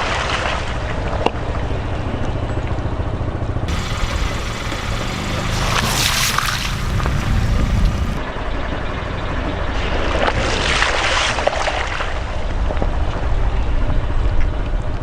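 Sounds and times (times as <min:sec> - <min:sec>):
tyre crushing foam: 0:03.7 - 0:08.2
low rumble: 0:03.7 - 0:08.6.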